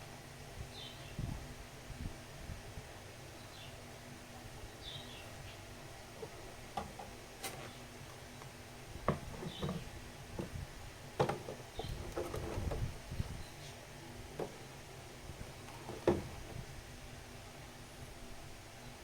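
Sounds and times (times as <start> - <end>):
bird chirping: 4.7 - 5.7, 9.3 - 9.9.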